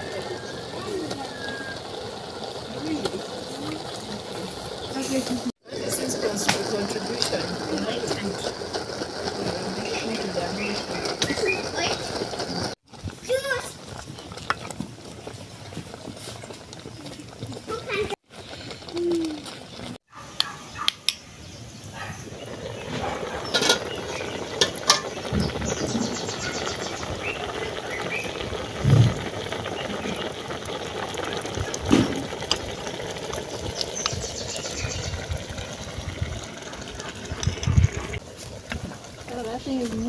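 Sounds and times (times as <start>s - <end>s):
sauce cooking with a hiss: 0.0s - 20.0s, 21.4s - 40.0s
utensils knocking on pot: 24.6s - 25.5s.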